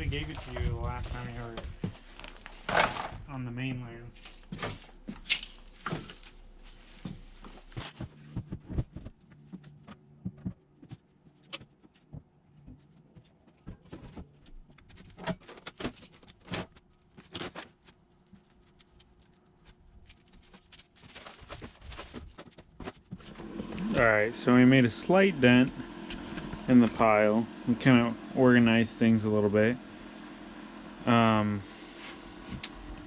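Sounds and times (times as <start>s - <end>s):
low hum: 0.0s - 10.8s, 23.2s - 33.0s.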